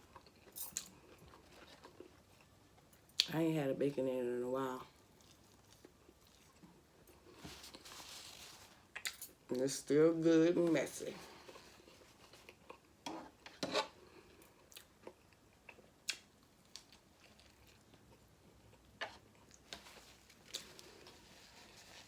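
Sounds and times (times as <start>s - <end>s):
person chewing food: 0.0s - 3.3s, 5.0s - 7.9s, 11.4s - 13.0s, 14.2s - 22.0s.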